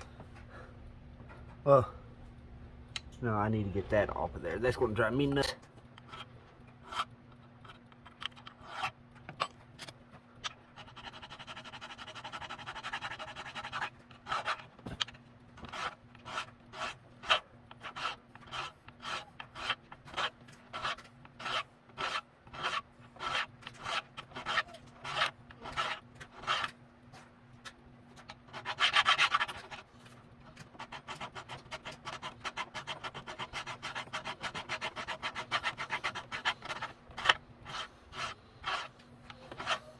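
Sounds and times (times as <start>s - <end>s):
hand file rasping on metal: 10.8s - 14.7s, 15.6s - 26.7s, 28.5s - 29.8s, 30.7s - 39.9s.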